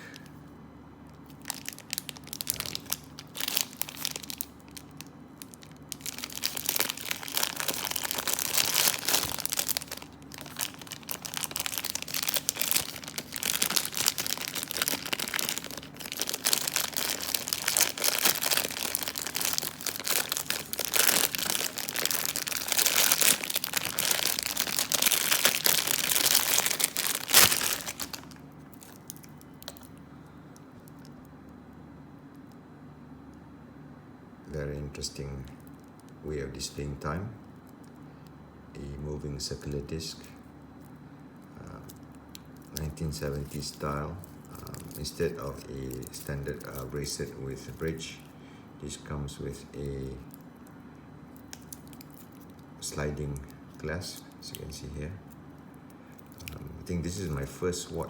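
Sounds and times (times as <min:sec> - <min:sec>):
plastic wrapping crinkling: 0:01.1 - 0:30.0, 0:41.7 - 0:48.3, 0:51.3 - 0:57.5.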